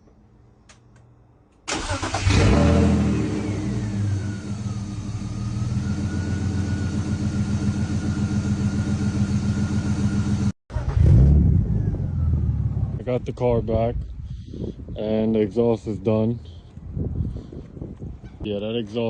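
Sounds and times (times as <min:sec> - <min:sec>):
car engine starting and idling: 0:01.7 - 0:13.4
turbo whine: 0:03.2 - 0:10.5.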